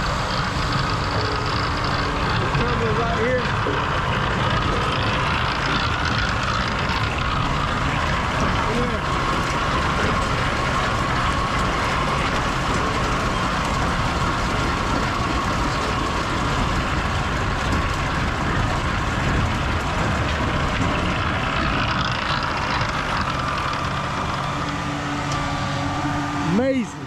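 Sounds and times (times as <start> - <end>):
rock picker tumblers rotating: 0.0 - 27.0
tractor engine: 0.0 - 27.0.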